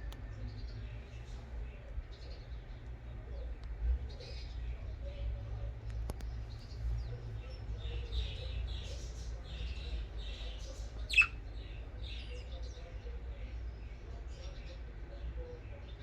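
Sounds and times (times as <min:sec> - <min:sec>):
budgerigars chattering: 0:06.6 - 0:13.0
loud budgerigar chirp: 0:07.5 - 0:14.9.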